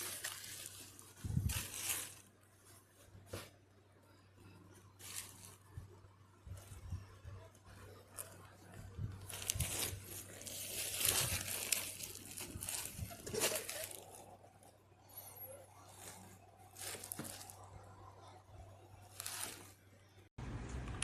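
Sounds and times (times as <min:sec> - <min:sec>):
packaging crinkling and tearing: 0:00.0 - 0:02.3, 0:09.2 - 0:14.2
faint low electrical hum: 0:00.0 - 0:21.0.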